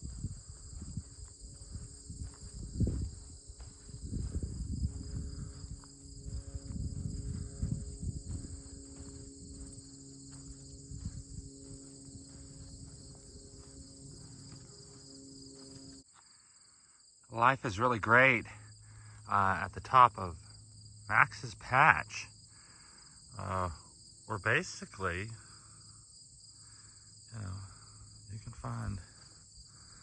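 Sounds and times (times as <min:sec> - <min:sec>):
microphone rumbles: 0:00.0 - 0:14.8
insect chorus trilling: 0:00.0 - 0:30.0.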